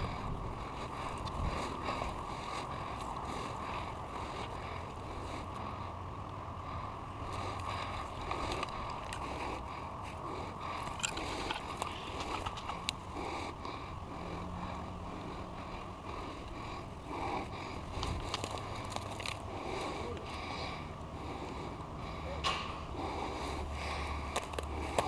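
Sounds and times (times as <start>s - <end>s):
low rumbling noise: 0.0s - 25.0s.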